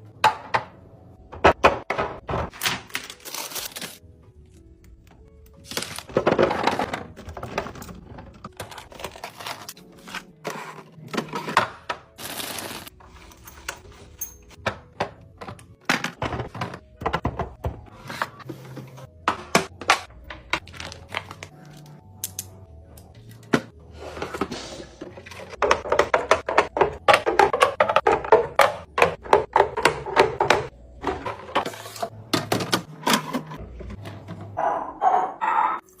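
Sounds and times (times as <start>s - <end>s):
containers knocking and rattling: 6.0s - 9.2s, 14.6s - 21.5s, 23.5s - 34.6s.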